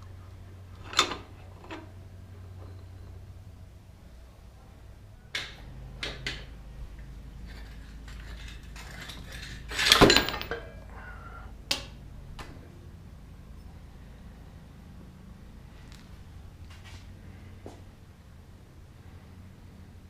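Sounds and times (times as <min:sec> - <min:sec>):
metal tools clanking: 0:00.8 - 0:03.1, 0:07.3 - 0:11.2
loud metal clatter: 0:07.4 - 0:10.8.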